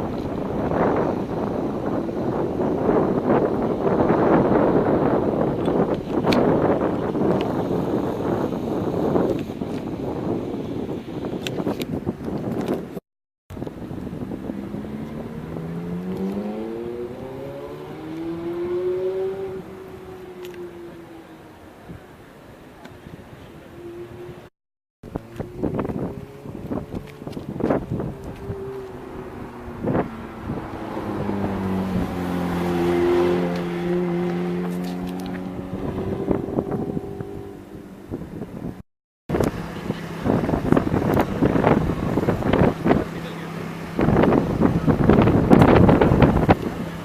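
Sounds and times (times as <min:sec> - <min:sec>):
wind buffeting microphone: 0:00.0 - 0:47.0
sports car accelerating: 0:13.6 - 0:22.1, 0:25.1 - 0:47.0
car engine running: 0:39.3 - 0:47.0.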